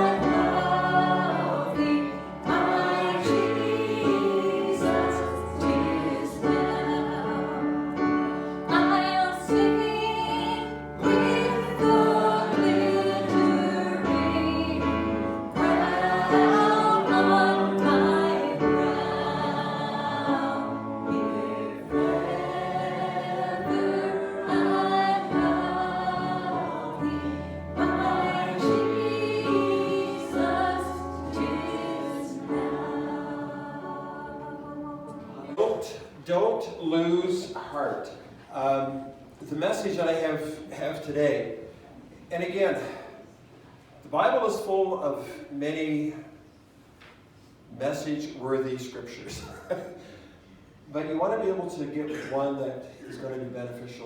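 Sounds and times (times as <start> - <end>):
group singing a hymn: 0.0 - 35.7.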